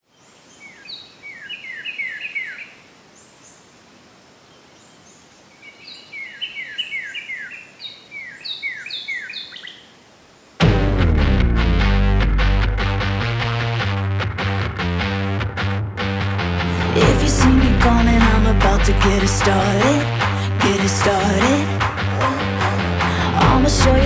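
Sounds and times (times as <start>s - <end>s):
songbird chirping: 0.0s - 10.5s
faint outdoor hiss: 0.0s - 10.6s.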